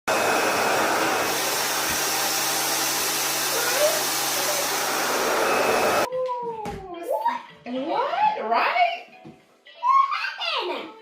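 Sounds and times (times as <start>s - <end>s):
hair dryer running: 0.1s - 6.1s.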